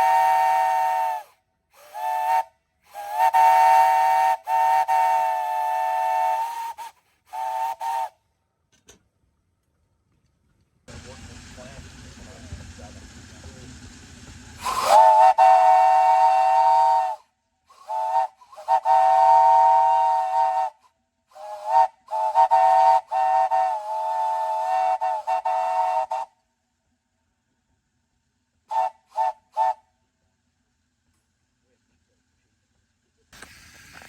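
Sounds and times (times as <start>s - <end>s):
steam hissing: 0.0s - 8.1s, 10.9s - 26.3s, 33.4s - 34.0s
steam whistle chord: 14.6s - 20.7s.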